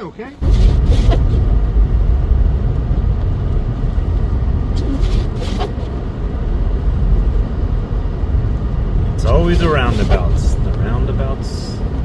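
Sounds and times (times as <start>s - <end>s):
vehicle driving rumble: 0.0s - 12.0s
hissing swishes: 0.4s - 1.4s, 4.8s - 6.0s, 9.8s - 10.4s.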